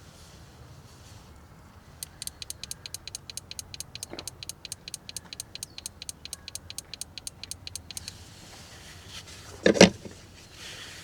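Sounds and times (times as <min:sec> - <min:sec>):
rapid mechanical clicking: 0:02.0 - 0:08.1.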